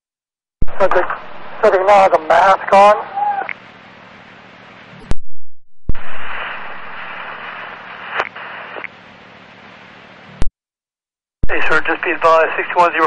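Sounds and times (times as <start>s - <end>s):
radio static hiss: 0.6s - 5.0s, 5.9s - 10.5s, 11.4s - 13.0s.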